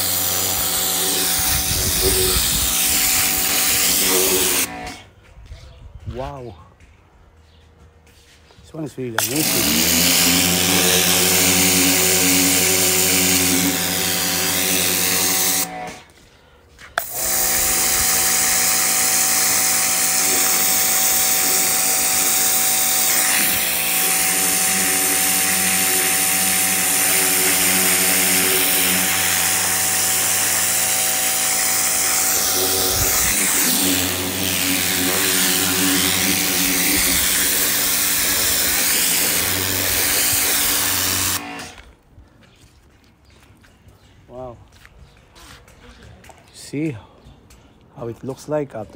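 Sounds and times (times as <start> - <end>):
pressure washer motor hum: 0.0 - 5.0, 9.1 - 16.1, 17.0 - 41.9.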